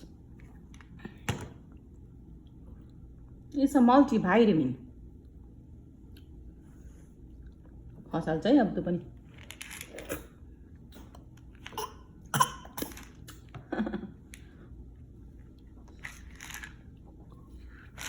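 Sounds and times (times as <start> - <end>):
baby coughing: 11.7 - 13.0.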